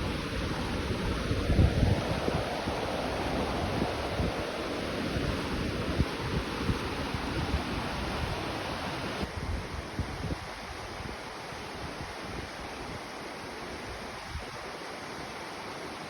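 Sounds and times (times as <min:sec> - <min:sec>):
waterfall rushing: 0:00.0 - 0:09.3
wind rumbling on microphone: 0:00.0 - 0:11.2.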